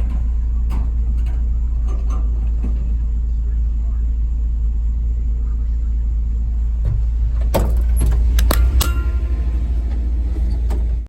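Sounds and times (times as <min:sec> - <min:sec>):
vehicle road rumble: 0:00.0 - 0:11.0
sharp clicks and knocks: 0:06.8 - 0:09.2.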